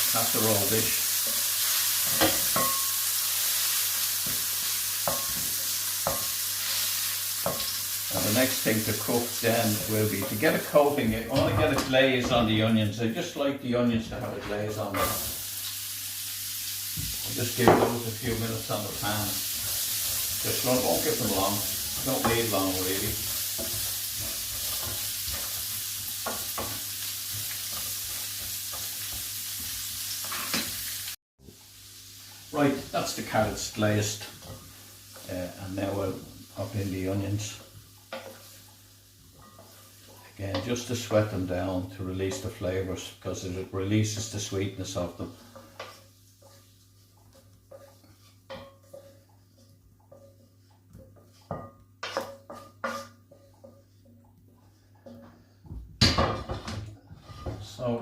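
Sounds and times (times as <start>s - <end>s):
vegetables sizzling in a frying pan: 0.0s - 12.7s, 14.2s - 55.4s
utensils clinking against frying pan: 1.2s - 3.1s, 47.2s - 54.2s
utensil scraping while stirring: 38.1s - 40.7s, 45.2s - 55.6s.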